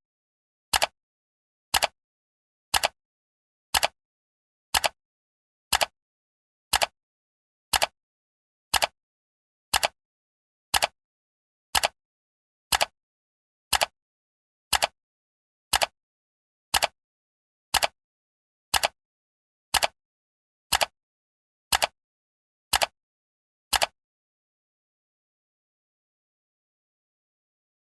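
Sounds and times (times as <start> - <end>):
timer ticking: 1.7 - 2.0, 3.7 - 4.0, 4.8 - 5.0, 5.7 - 5.9, 6.7 - 6.9, 7.7 - 7.9, 10.8 - 11.0, 11.8 - 12.0, 12.7 - 12.9, 13.7 - 13.9, 14.7 - 15.0, 15.7 - 15.9, 16.8 - 17.0, 17.8 - 18.0, 18.7 - 19.0, 19.7 - 20.0, 20.7 - 20.9, 21.7 - 22.0.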